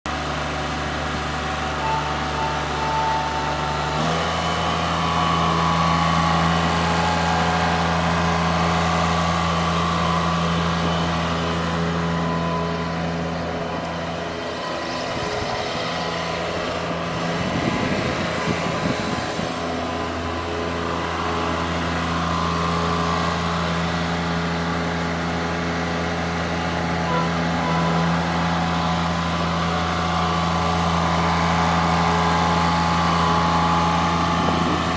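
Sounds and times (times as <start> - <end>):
backhoe engine running: 0.1 - 34.9.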